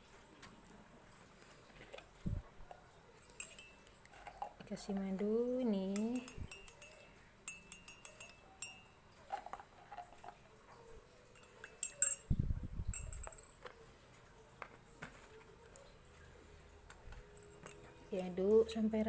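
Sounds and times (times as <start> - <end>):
metal spoon clinking on glass: 3.2 - 13.8, 17.0 - 18.8.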